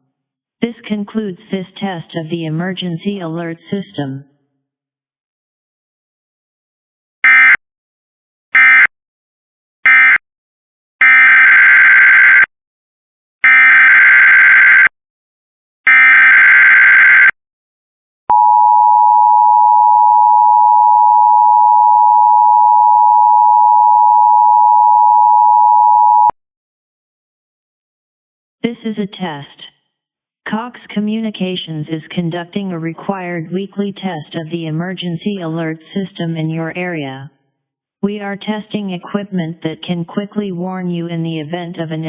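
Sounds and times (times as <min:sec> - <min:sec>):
steady attention tone: 0:18.3 - 0:26.3.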